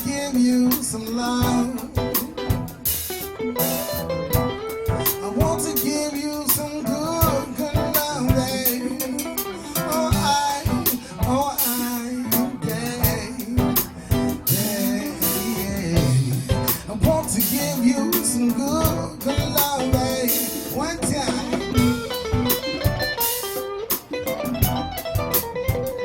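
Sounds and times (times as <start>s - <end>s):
person singing: 0.0s - 24.0s
acoustic guitar: 0.0s - 26.0s
drum kit beat: 0.0s - 26.0s.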